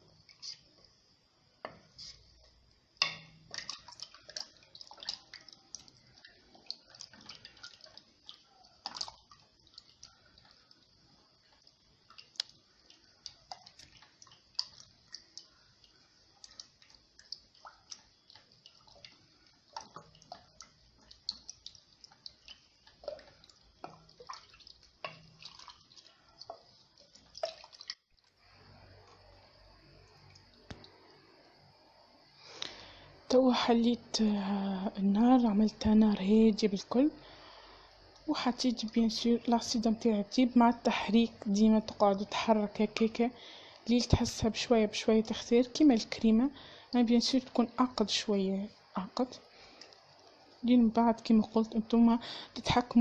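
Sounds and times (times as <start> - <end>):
ladle tapping a pot: 3.0 - 3.7
batter sloshing: 12.1 - 28.0.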